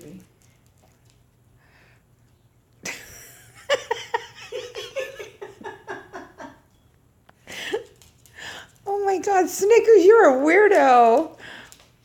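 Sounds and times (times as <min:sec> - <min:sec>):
woman laughing: 0:02.8 - 0:06.7.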